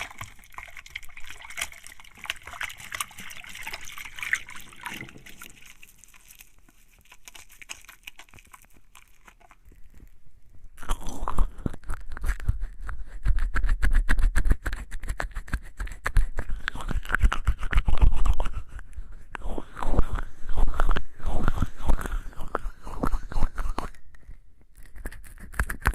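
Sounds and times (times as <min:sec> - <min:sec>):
soapy hands rubbing together: 0:00.0 - 0:09.6.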